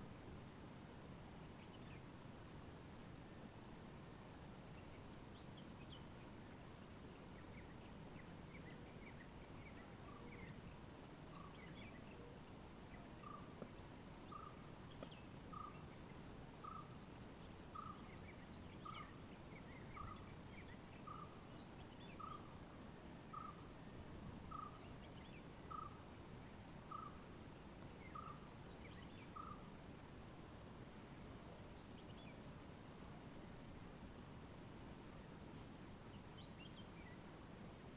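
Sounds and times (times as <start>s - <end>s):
small bird chirps: 4.7s - 23.7s, 24.5s - 26.1s, 26.8s - 27.2s, 27.9s - 29.8s.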